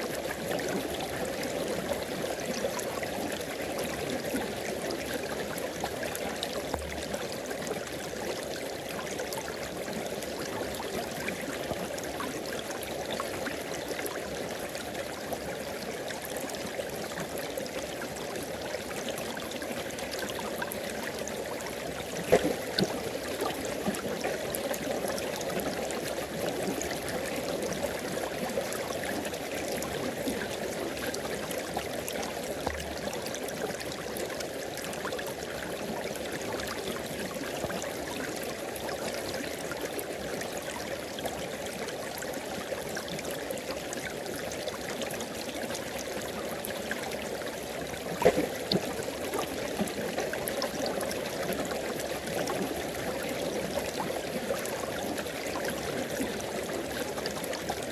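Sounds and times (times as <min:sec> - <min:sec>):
river water flowing over rocks: 0:00.0 - 0:57.9.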